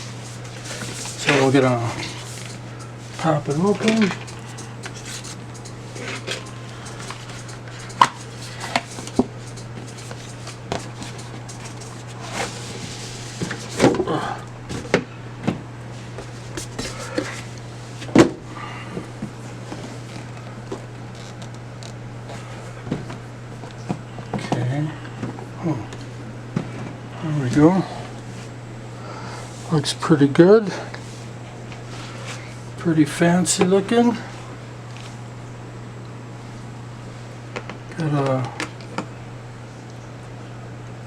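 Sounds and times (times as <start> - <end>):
cardboard packaging rustling: 0.0 - 14.0
steady low hum: 0.0 - 41.0.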